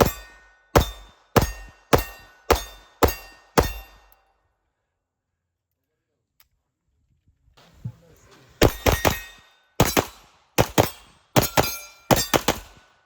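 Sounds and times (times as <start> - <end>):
rapid gunfire bursts: 8.6 - 12.8.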